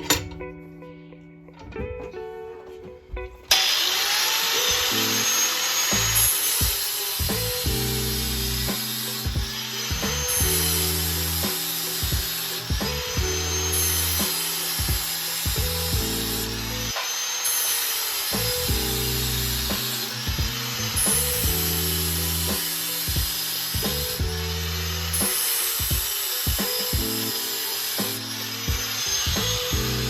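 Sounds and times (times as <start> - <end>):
angle grinder on metal blade: 3.5 - 30.0
background music with bass: 5.9 - 17.0, 18.4 - 30.0.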